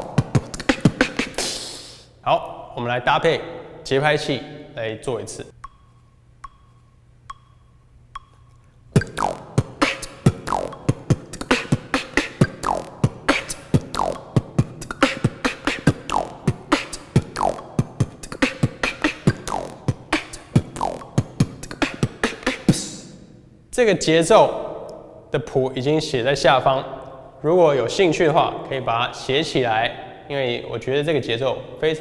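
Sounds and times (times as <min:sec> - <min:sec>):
beatbox rhythm: 0:00.0 - 0:02.2, 0:05.5 - 0:23.2
metronome ticking: 0:05.5 - 0:22.9.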